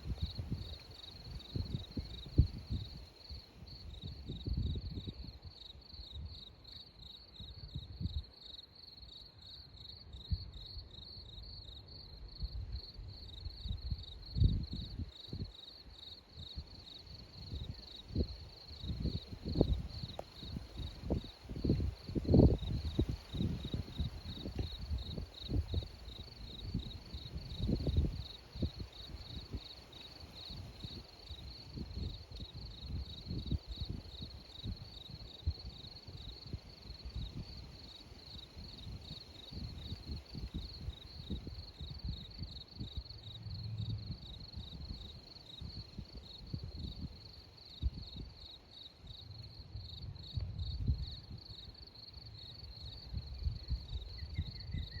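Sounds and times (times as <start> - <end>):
wind buffeting microphone: 0.0 - 5.5, 13.5 - 15.5, 16.6 - 48.4, 49.7 - 51.6, 52.7 - 55.0
crickets chirping: 0.0 - 55.0.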